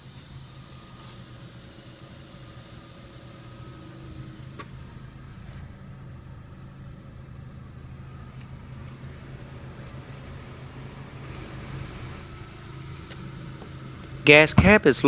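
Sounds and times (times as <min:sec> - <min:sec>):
car engine idling: 0:04.8 - 0:15.0.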